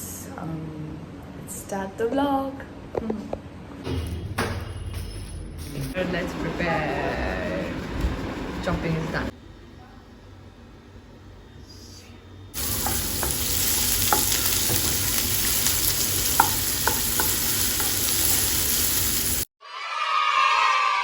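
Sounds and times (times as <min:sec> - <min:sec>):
food sizzling in a pan: 0:12.6 - 0:19.5.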